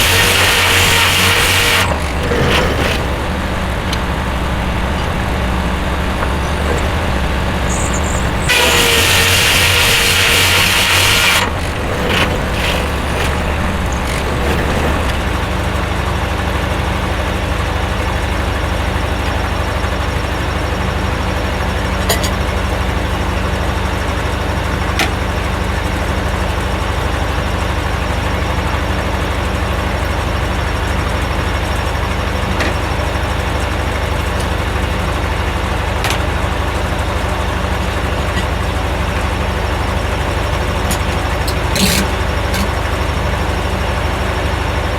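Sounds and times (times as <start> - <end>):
loud noisy burst: 0.0 - 15.8
sawmill engine droning: 0.0 - 17.0.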